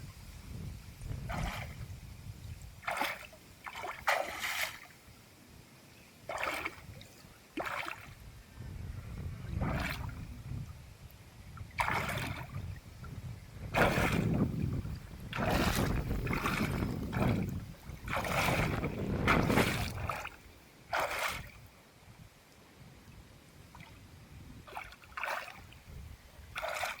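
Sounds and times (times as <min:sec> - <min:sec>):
water splashing: 0:01.1 - 0:01.9, 0:02.7 - 0:05.0, 0:06.3 - 0:08.2, 0:09.5 - 0:10.3, 0:11.7 - 0:12.7, 0:13.6 - 0:21.7, 0:24.6 - 0:25.9, 0:26.5 - 0:27.0.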